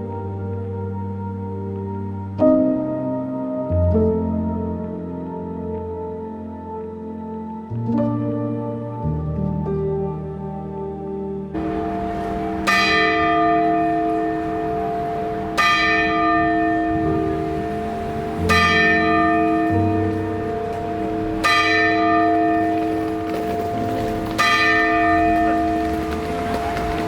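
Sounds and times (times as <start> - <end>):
clock tower bell striking: 11.6 - 27.0.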